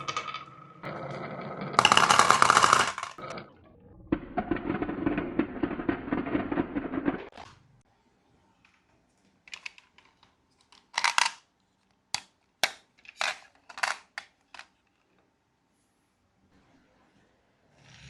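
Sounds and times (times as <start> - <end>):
marbles clicking and rattling: 1.8 - 3.3, 4.1 - 7.3.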